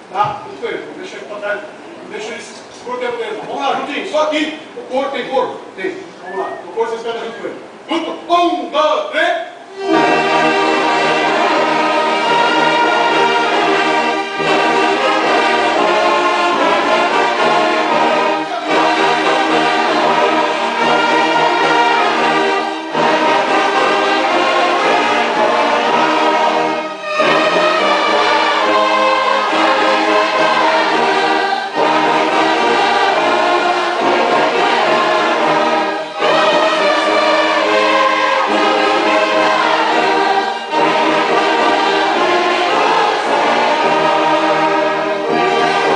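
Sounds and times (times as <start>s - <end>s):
brass orchestra playing a hymn: 9.6s - 45.9s
choir singing: 9.7s - 45.9s.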